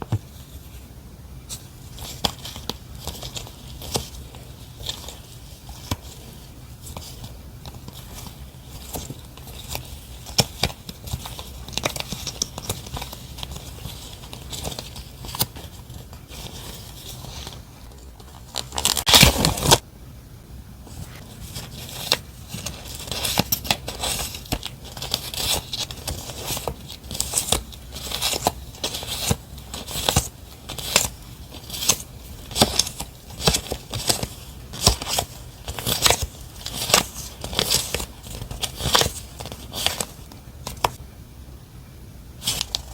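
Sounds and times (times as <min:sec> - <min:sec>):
packaging crinkling and scraping: 0:01.5 - 0:19.8, 0:20.9 - 0:41.0, 0:42.4 - 0:42.9
packaging tearing: 0:21.4 - 0:41.0.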